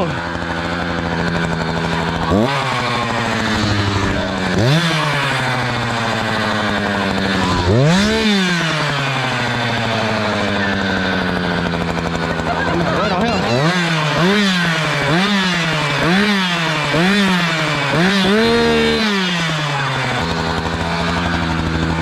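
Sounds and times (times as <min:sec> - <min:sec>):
chainsaw idling and revving: 0:00.0 - 0:22.0.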